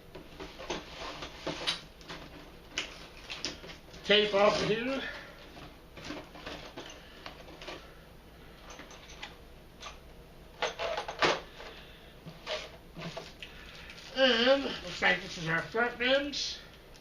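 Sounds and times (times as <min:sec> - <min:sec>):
plastic bags rustling: 0:00.3 - 0:08.0, 0:10.6 - 0:16.5.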